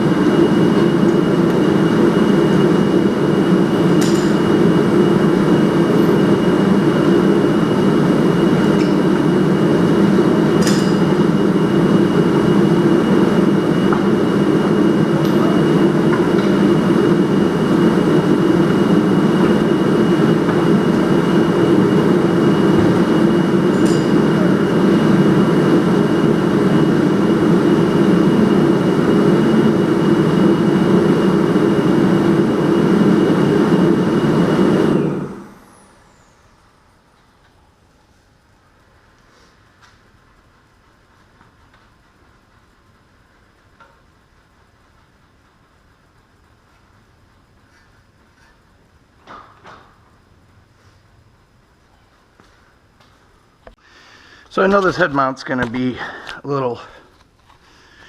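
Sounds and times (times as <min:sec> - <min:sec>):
shop heater rumbling with whine: 0:00.0 - 0:58.0.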